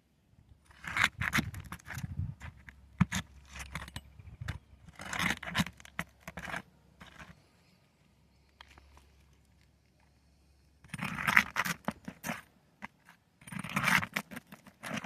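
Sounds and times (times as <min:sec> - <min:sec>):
hand tool scraping roof shingles: 0:00.7 - 0:07.4, 0:10.9 - 0:15.0.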